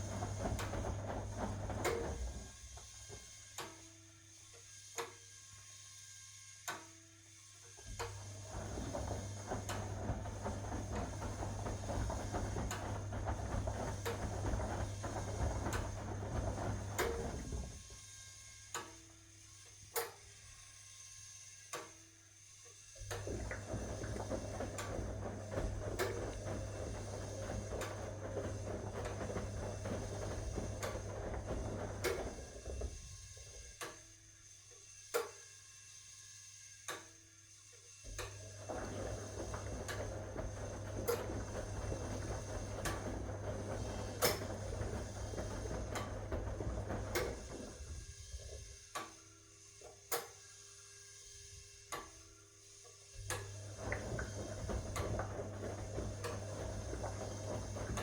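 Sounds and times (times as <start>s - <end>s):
wet laundry tumbling: 0.0s - 2.6s, 7.9s - 17.8s, 23.0s - 33.7s, 38.3s - 48.0s, 53.2s - 58.0s
washing machine drum motor hum: 0.0s - 3.9s, 7.8s - 18.1s, 22.9s - 35.4s, 38.1s - 50.4s, 51.5s - 58.0s.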